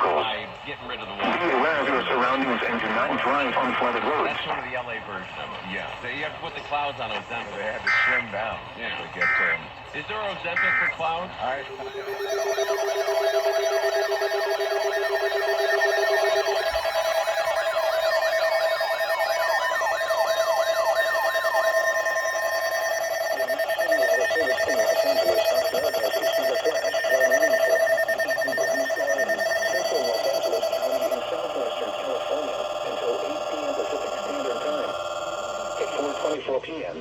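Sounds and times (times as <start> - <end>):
electronic alarm tones: 7.9 - 8.3, 9.1 - 9.7, 10.4 - 36.4
siren-like warble: 7.9 - 8.4, 9.1 - 9.7, 10.4 - 36.4.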